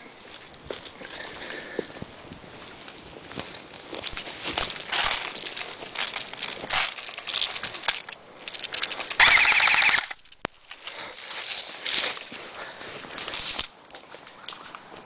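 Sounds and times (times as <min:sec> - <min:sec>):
footsteps: 0:00.0 - 0:15.0
rustling through brush: 0:00.0 - 0:15.0
airsoft rifle firing burst: 0:09.2 - 0:10.2.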